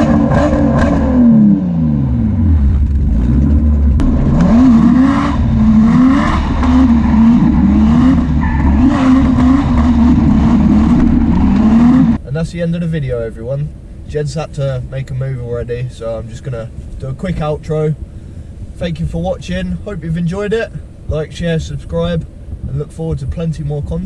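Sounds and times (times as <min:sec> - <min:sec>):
car engine revving: 0:00.0 - 0:12.2.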